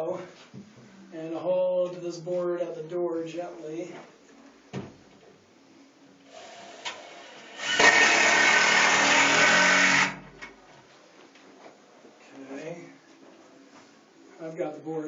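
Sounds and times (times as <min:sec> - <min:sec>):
power drill running: 0:06.6 - 0:10.2.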